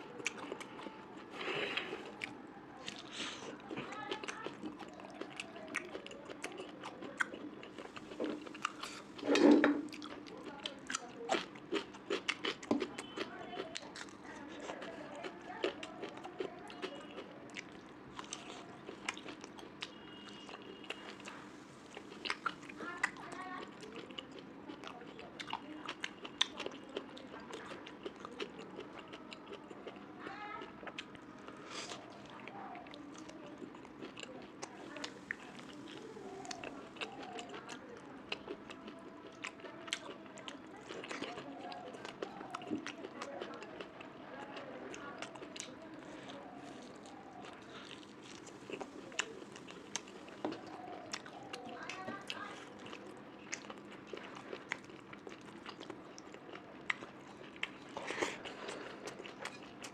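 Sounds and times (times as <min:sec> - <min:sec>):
person chewing food: 0:00.0 - 0:59.9.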